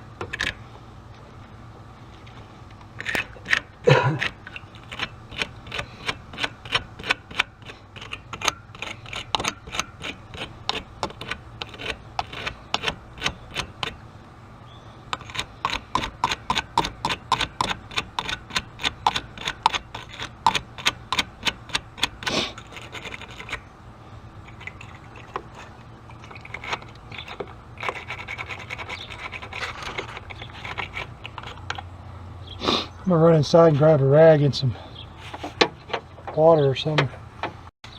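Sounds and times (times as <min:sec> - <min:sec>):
hand tool scraping corrosion: 0:03.0 - 0:14.0, 0:15.0 - 0:23.7, 0:24.4 - 0:32.0.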